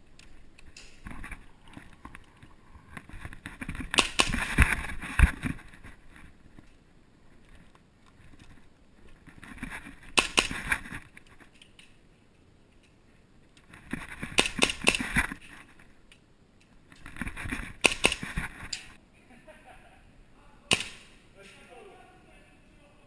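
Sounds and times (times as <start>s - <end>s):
rustling movement: 0.0s - 16.1s, 16.7s - 19.0s.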